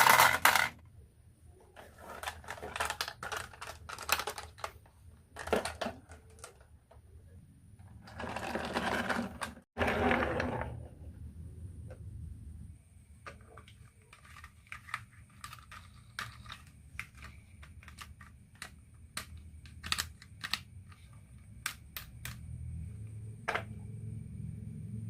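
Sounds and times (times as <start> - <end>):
marbles rolling on wooden track: 0.0 - 0.8, 7.9 - 10.8.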